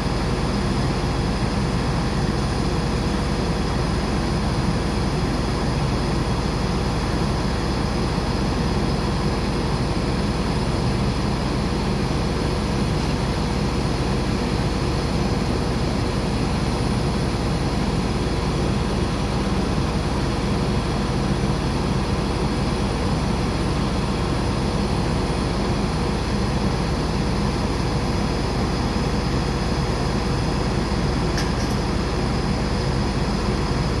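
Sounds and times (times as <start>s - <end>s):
air conditioning unit blowing: 0.0s - 34.0s.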